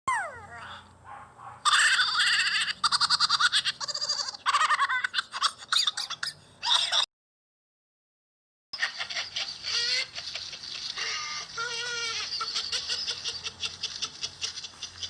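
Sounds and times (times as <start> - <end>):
high-pitched cackling laugh: 1.6 - 7.1, 8.8 - 15.0.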